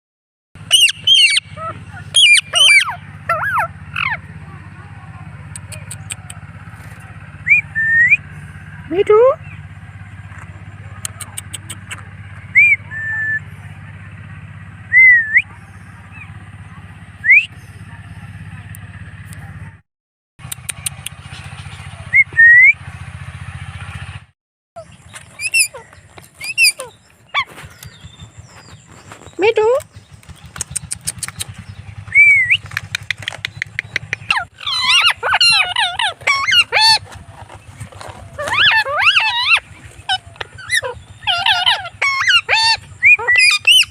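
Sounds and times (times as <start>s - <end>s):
parrot whistling: 0.7s - 4.2s, 12.5s - 13.4s, 25.4s - 27.0s, 33.5s - 37.0s, 38.4s - 43.9s
sharp clicks: 5.4s - 6.4s, 20.4s - 21.3s, 29.3s - 31.9s, 32.6s - 34.4s
parrot rising whistle: 38.4s - 43.9s.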